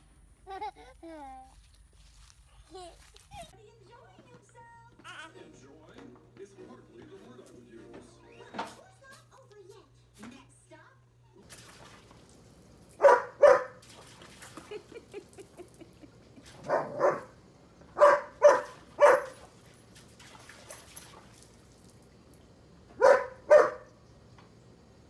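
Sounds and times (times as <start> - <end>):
dog barking: 13.0 - 13.8, 16.6 - 17.4, 18.0 - 19.4, 23.0 - 24.0.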